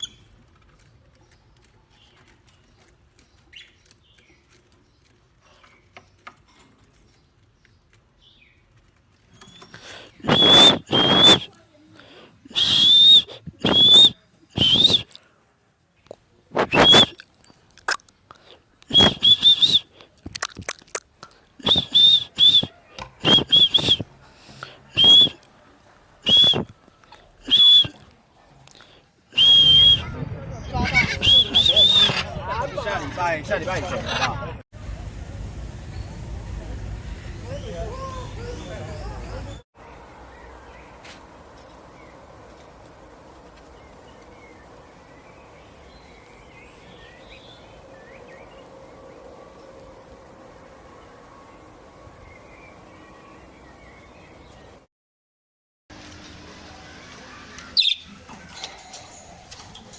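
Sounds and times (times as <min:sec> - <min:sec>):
background hiss: 0:09.7 - 0:17.6, 0:18.2 - 0:20.2, 0:21.4 - 0:30.0
parrot whistling: 0:10.2 - 0:11.5, 0:12.5 - 0:15.2, 0:16.6 - 0:17.2, 0:18.9 - 0:19.9, 0:21.6 - 0:24.0, 0:24.9 - 0:25.4, 0:26.2 - 0:26.7, 0:27.4 - 0:28.0, 0:29.4 - 0:30.1, 0:30.8 - 0:32.3.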